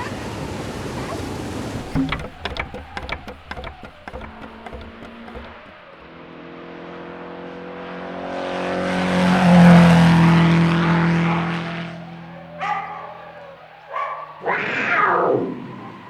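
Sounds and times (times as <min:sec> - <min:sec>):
vehicle passing by: 0:06.3 - 0:12.5.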